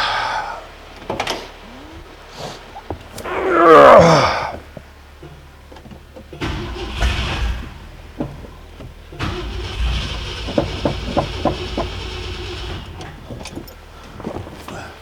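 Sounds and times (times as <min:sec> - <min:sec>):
car engine cranking: 0:04.1 - 0:15.0.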